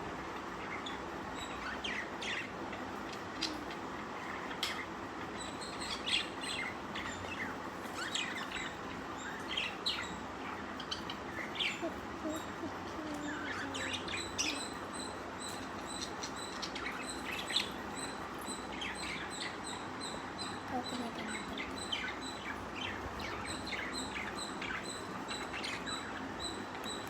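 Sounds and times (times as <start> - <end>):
budgerigars chirping: 0.6 - 27.0.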